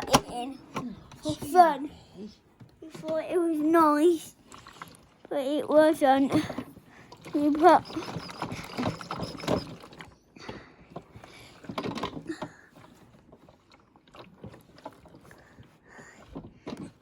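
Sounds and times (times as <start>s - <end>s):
toy washing machine running: 2.8s - 17.0s.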